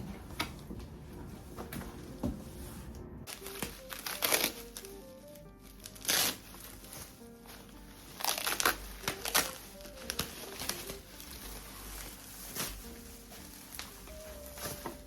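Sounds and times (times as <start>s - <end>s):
faint background music: 0.0s - 15.0s
packaging crinkling and rustling: 3.3s - 15.0s.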